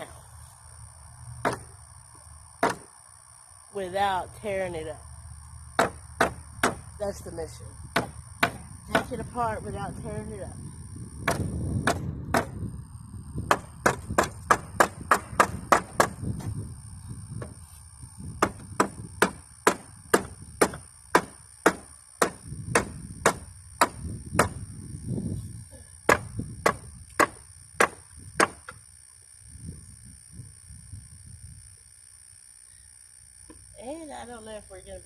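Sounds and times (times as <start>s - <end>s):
hammer knocking on wood: 1.4s - 1.7s, 2.6s - 2.9s, 5.8s - 6.8s, 7.9s - 9.2s, 11.2s - 12.6s, 13.4s - 16.2s, 18.4s - 24.6s, 26.1s - 28.8s.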